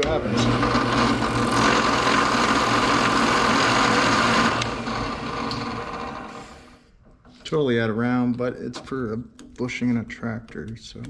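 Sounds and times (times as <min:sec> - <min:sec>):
drill press motor humming: 0:00.0 - 0:06.8
motor winding down: 0:00.0 - 0:06.8.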